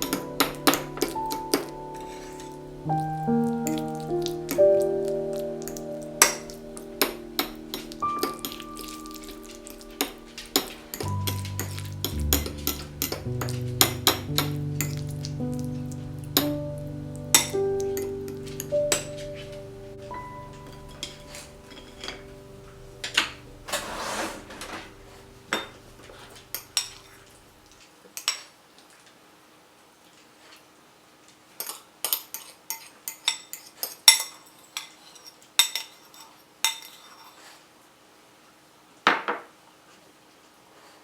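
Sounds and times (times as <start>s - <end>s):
tableware clinking and knocking: 23.0s - 27.0s
dish scraping: 23.0s - 27.1s.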